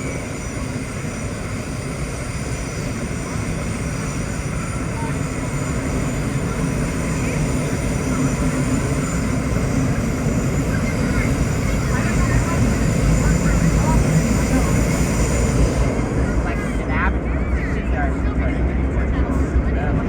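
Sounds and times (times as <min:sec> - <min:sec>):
subway train rumbling: 0:00.0 - 0:20.0.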